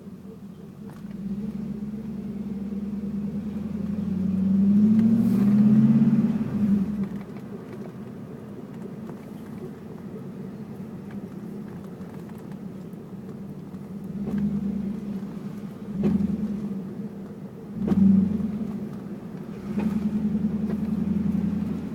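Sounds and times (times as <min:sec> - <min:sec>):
car engine revving: 0:00.9 - 0:07.2, 0:14.0 - 0:17.0, 0:17.6 - 0:21.9.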